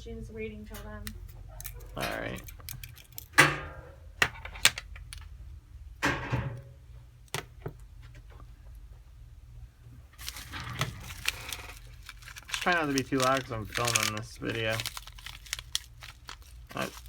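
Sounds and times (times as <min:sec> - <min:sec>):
tools clicking against a phone: 0:01.1 - 0:03.3.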